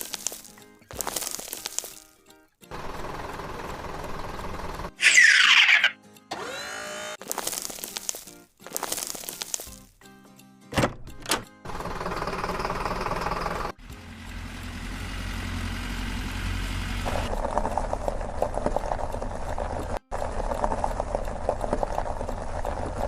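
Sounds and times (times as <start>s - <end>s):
machinery engine rumbling: 11.7s - 23.0s.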